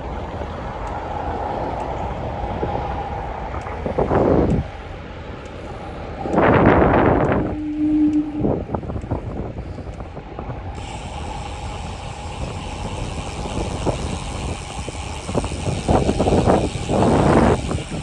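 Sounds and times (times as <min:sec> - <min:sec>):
steady low rumble: 0:00.0 - 0:18.0
steady low tone: 0:00.0 - 0:18.0
street traffic: 0:00.0 - 0:18.0.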